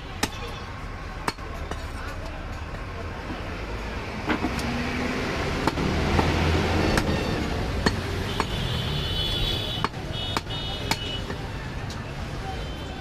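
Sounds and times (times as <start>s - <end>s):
street and shop noise: 0.0s - 13.0s
cleaver chopping meat on block: 7.8s - 8.6s, 9.8s - 11.4s.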